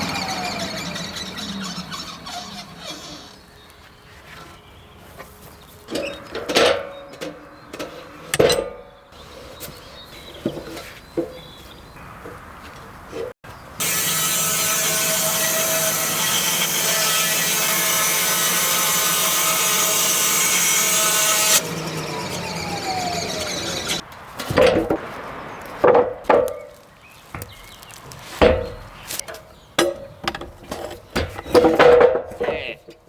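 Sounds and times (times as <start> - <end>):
saw blade whining: 0.0 - 3.7, 13.8 - 24.0
wooden knocks and clunks: 22.8 - 25.1, 25.8 - 33.0.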